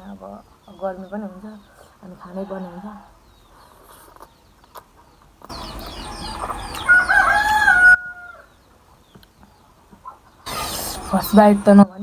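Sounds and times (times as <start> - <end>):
rooster crowing: 5.5 - 8.5.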